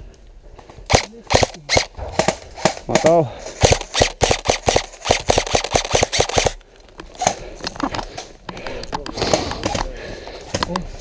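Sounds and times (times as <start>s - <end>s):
airsoft guns firing: 0.9s - 6.6s.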